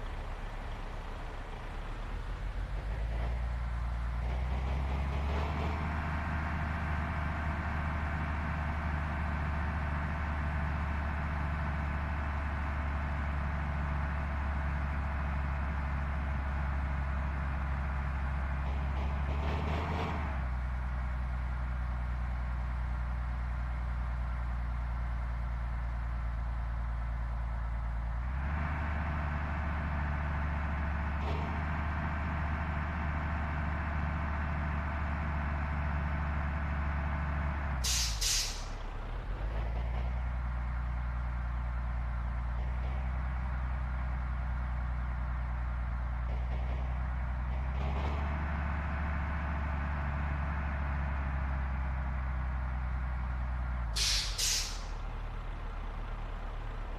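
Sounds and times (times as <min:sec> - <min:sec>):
bus diesel engine running: 0:00.0 - 0:56.9
air brakes hissing: 0:37.8 - 0:38.8, 0:54.0 - 0:55.0.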